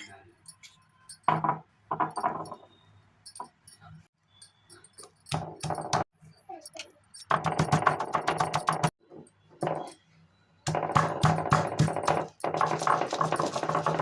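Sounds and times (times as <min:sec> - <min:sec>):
kitchen work clatter: 0:10.7 - 0:14.0.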